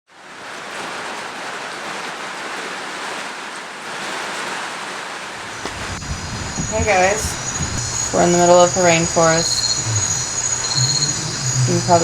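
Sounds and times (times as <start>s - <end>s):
rainforest night hiss: 5.4s - 12.0s.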